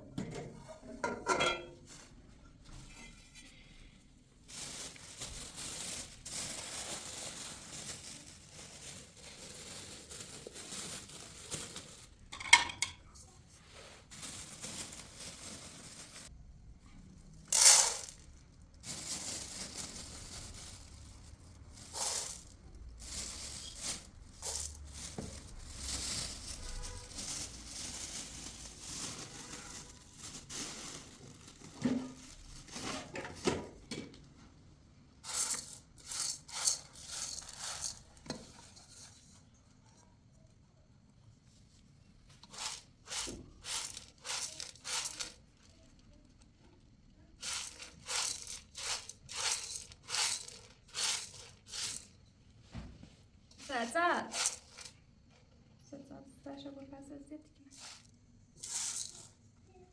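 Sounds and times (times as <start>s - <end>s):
rustling and crinkling: 4.4s - 12.4s, 13.1s - 16.4s, 17.0s - 33.8s.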